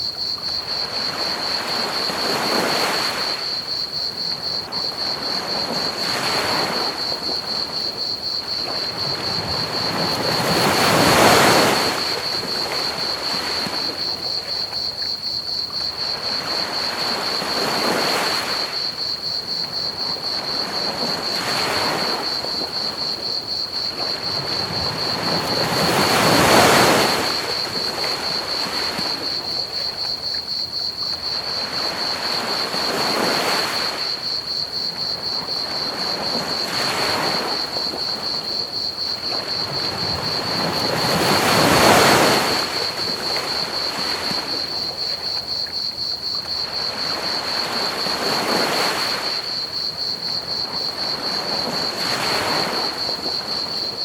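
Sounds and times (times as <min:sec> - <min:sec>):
crickets chirping: 0:00.0 - 0:54.0
ocean waves washing onto beach: 0:00.0 - 0:54.0.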